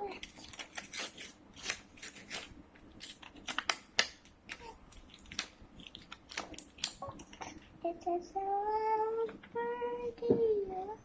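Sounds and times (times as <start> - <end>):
plastic packaging crackling and ripping: 0.0 - 7.7.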